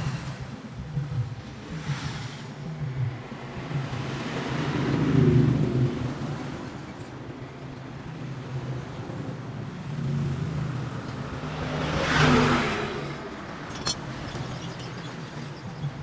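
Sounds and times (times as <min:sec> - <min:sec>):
car engine humming: 0:13.5 - 0:16.0.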